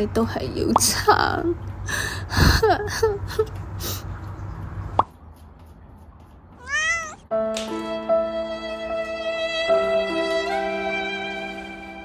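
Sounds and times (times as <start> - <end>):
cat meowing: 6.6 - 7.2
soft string music: 7.2 - 12.0.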